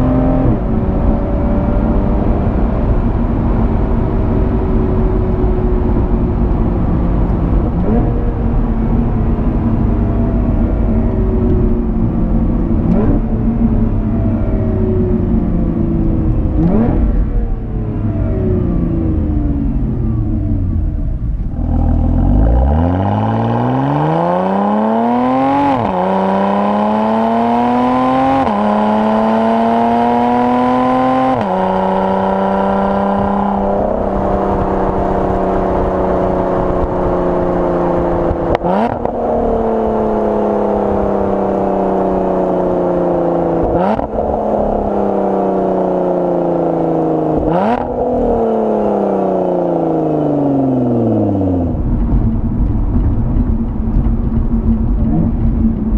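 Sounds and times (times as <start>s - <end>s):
car engine accelerating: 0.0s - 55.9s
exhaust cracks: 50.7s - 55.9s.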